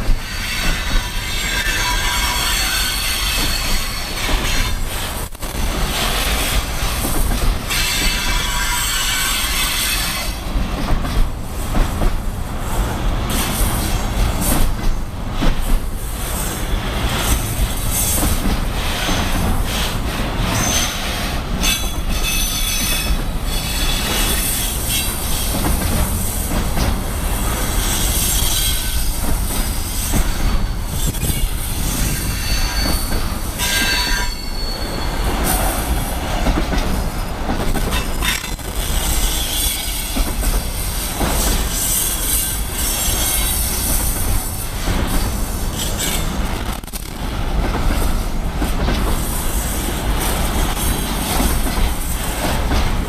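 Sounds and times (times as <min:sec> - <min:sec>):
train wheels rumbling on rails: 0:00.0 - 0:53.0
wheels squealing: 0:29.9 - 0:35.9.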